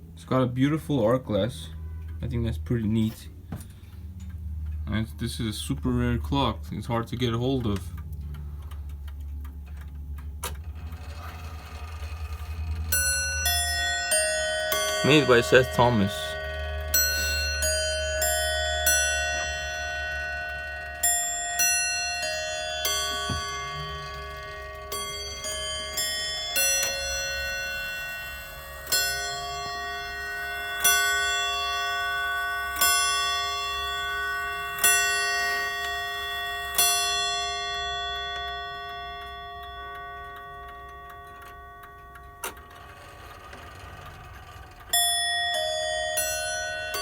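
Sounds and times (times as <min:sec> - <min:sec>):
clock strikes ringing: 0:00.0 - 0:47.0
wall clock chime tune: 0:09.8 - 0:47.0.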